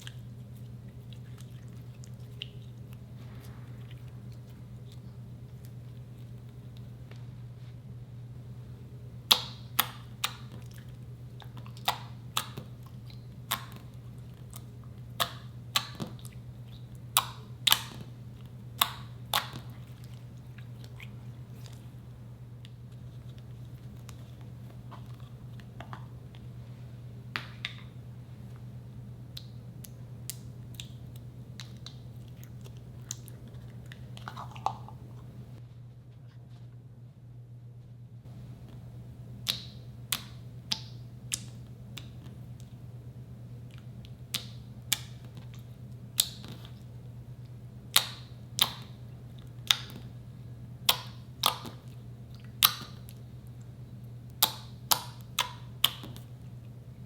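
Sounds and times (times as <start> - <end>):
low hum: 0.0 - 9.3.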